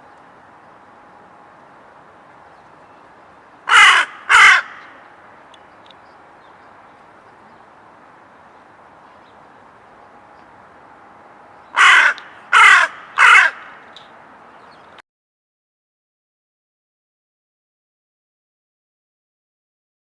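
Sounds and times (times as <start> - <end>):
faint background noise: 0.0 - 15.0
bird harsh calls: 3.7 - 5.2, 11.6 - 14.9.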